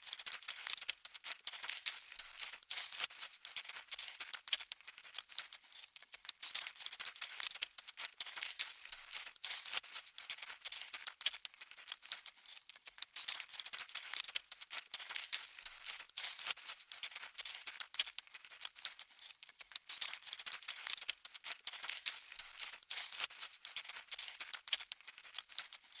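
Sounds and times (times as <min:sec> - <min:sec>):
tiny scratchy insect clicks: 0:12.8 - 0:25.9.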